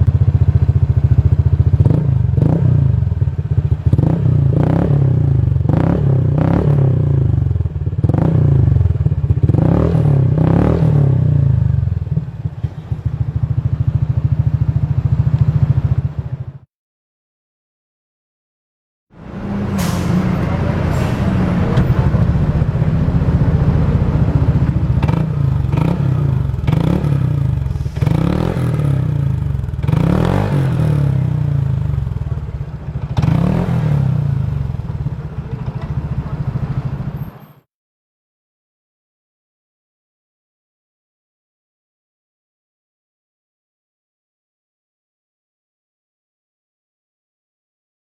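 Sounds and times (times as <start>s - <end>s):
motorcycle engine idling: 0.0s - 5.7s, 7.1s - 9.6s, 11.2s - 16.7s, 21.8s - 37.4s.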